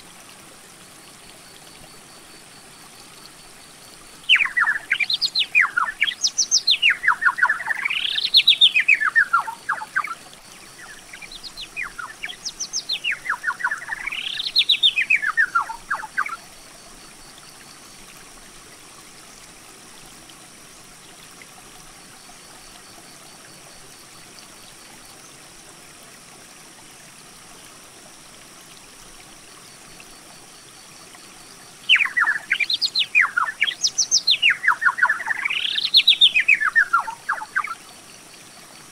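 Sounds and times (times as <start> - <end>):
faint steady hiss: 0.0 - 38.9
songbird singing: 4.2 - 16.5, 31.8 - 37.9.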